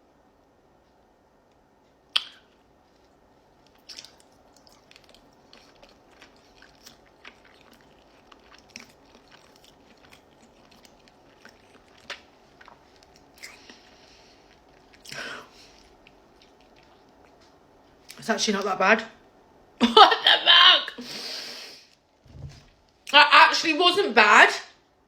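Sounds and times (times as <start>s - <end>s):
person chewing food: 2.1s - 18.2s.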